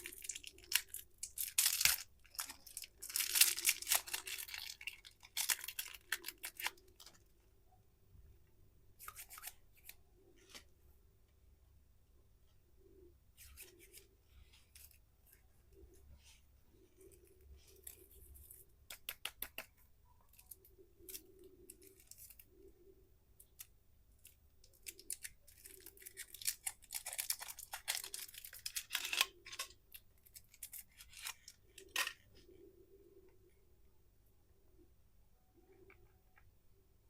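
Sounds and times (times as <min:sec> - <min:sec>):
candy packaging crinkling: 0:00.0 - 0:07.3, 0:23.4 - 0:32.2.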